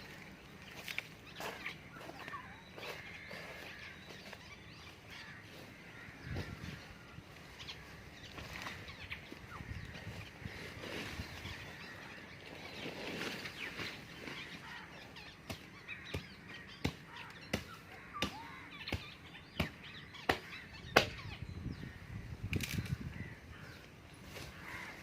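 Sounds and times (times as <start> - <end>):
birds calling: 0.0 - 25.0.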